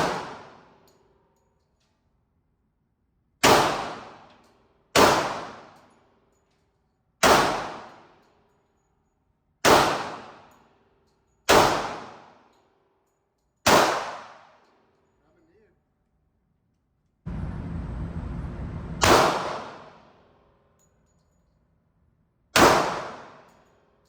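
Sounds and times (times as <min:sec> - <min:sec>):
gunshots with echo: 0:17.3 - 0:20.2, 0:22.6 - 0:23.4.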